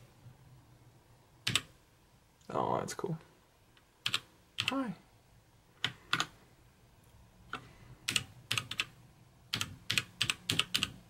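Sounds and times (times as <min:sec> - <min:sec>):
mechanical keyboard keys clacking: 0:09.5 - 0:11.0.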